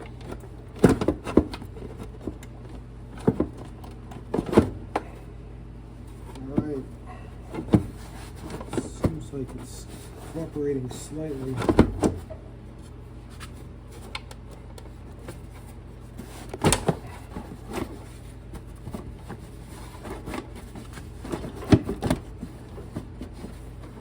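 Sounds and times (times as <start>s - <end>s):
faint steady hum: 0.0s - 24.0s
knocks and clunks: 11.5s - 12.4s.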